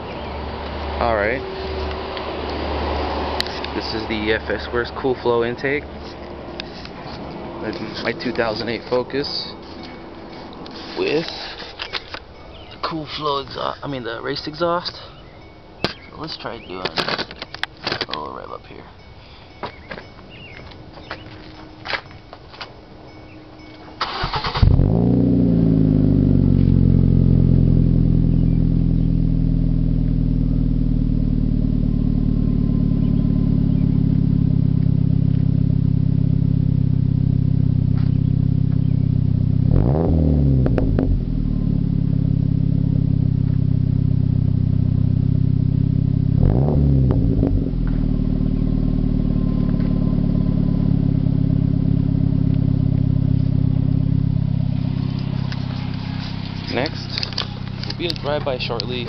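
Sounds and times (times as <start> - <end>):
car engine starting and idling: 0.0 - 18.8, 19.7 - 59.0
engine revving: 0.7 - 5.8, 24.0 - 59.0.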